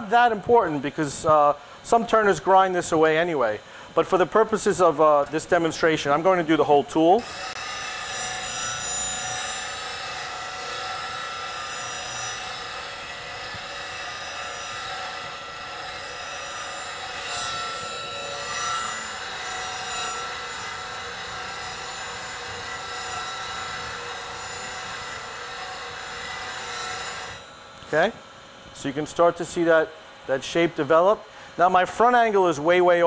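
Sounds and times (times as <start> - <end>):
bench grinder grinding steel: 7.1 - 28.2.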